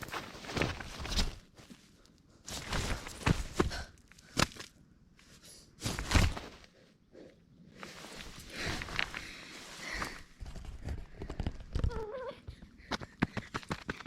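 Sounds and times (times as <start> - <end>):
rustling: 7.7 - 12.0.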